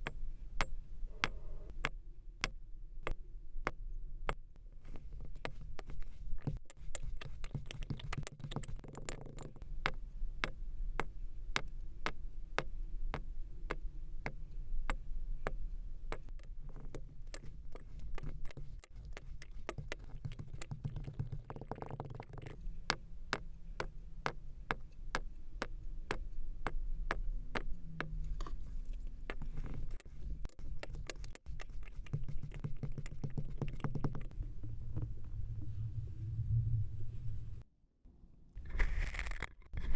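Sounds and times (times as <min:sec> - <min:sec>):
steady low rumble: 0:34.3 - 0:38.6.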